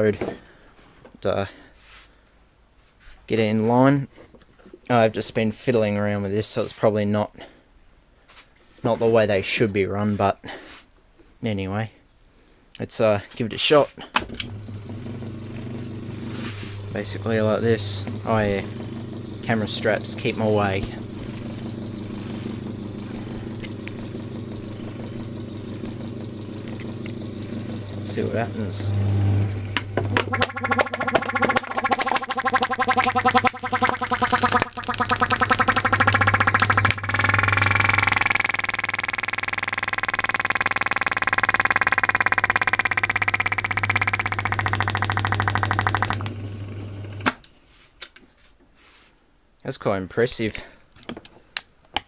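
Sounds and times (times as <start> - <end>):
electric motor driving compressor: 14.4 - 47.4
sharp clicks: 29.7 - 46.4.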